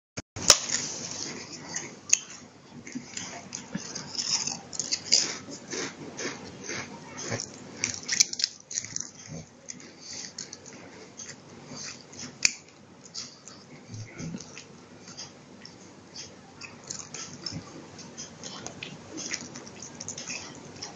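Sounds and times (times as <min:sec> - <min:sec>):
dog crunching crisps: 0:00.4 - 0:13.8, 0:16.5 - 0:20.9.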